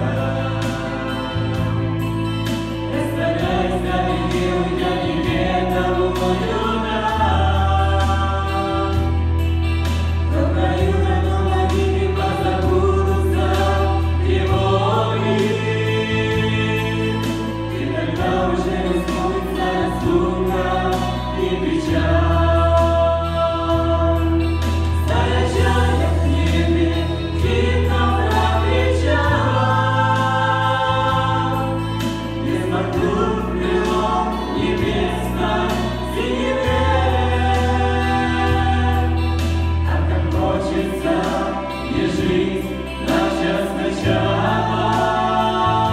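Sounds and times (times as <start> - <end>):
choir singing with accompaniment: 0.0 - 45.9
held bass notes: 0.0 - 45.9.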